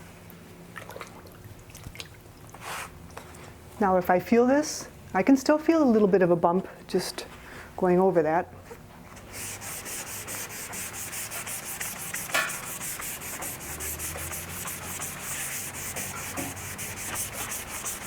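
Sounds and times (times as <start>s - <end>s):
sandpaper rubbing strokes: 9.3s - 18.0s.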